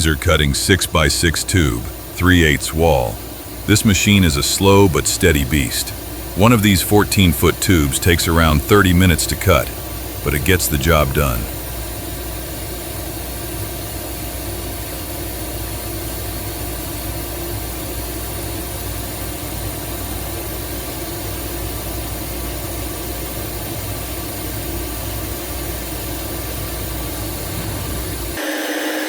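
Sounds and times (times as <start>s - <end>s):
faint high whine: 0.0s - 22.6s
laser cutting machine hum: 0.0s - 29.0s.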